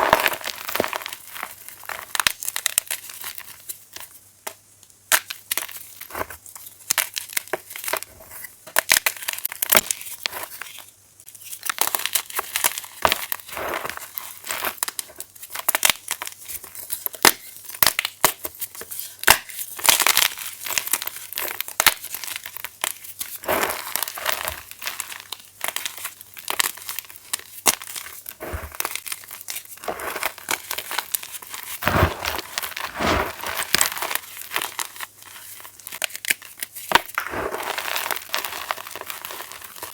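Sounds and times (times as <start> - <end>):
chalk crunching: 27.8 - 39.9.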